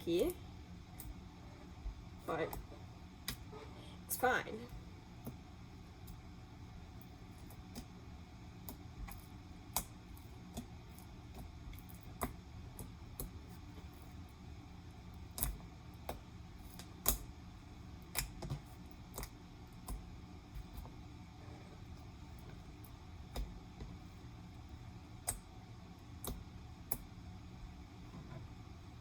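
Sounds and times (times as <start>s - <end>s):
slime squishing with clicks and pops: 2.5s - 3.5s, 8.6s - 13.6s, 15.2s - 17.4s, 18.0s - 20.8s, 25.1s - 27.2s.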